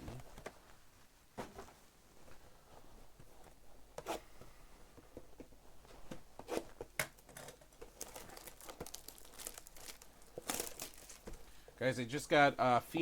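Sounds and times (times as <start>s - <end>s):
plastic wrap crinkling and tearing: 7.5s - 11.4s.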